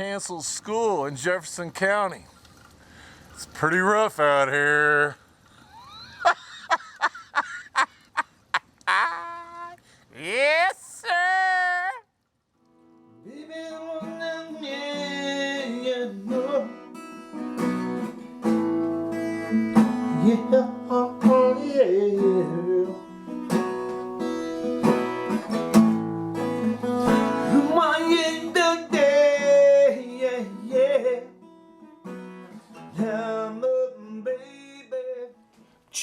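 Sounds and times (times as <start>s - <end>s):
person singing: 8.9s - 12.1s
acoustic guitar strumming: 12.7s - 36.0s.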